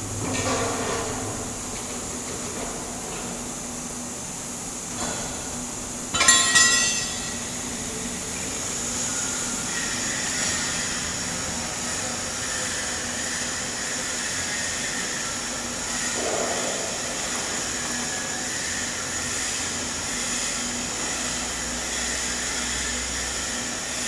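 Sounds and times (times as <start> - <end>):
sharp metallic clink: 6.2 - 7.6.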